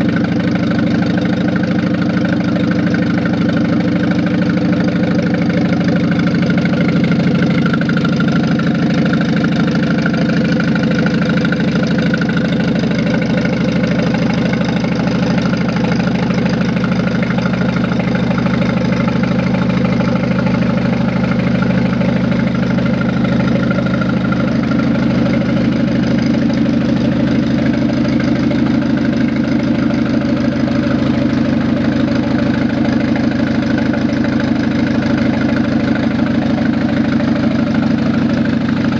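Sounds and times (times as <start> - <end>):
car engine idling: 0.0 - 38.9.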